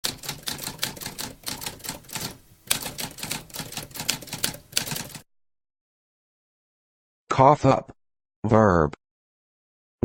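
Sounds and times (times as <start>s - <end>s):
typewriter keys clacking: 0.0s - 5.2s.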